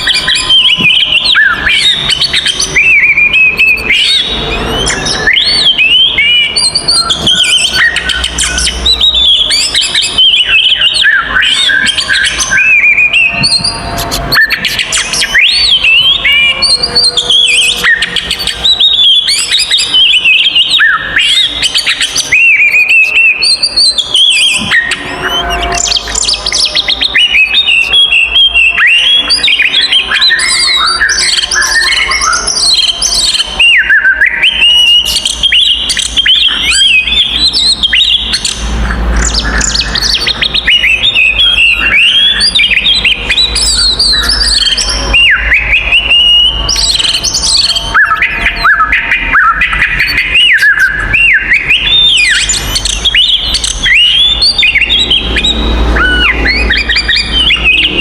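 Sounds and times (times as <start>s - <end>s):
birds singing loudly: 0.0s - 58.0s.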